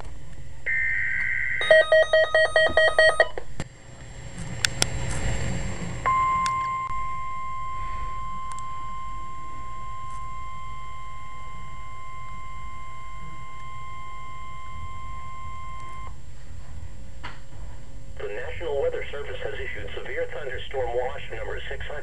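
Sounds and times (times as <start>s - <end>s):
steady high alarm tone: 0.6s - 3.4s, 6.0s - 16.2s.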